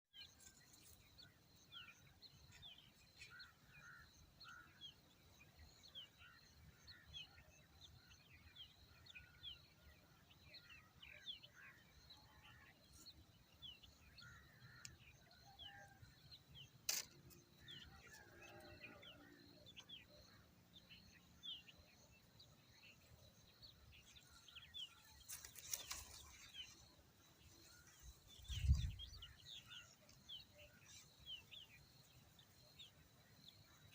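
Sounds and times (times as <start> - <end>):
birds chirping faintly: 0.1 - 33.9
sharp click: 16.8 - 17.4.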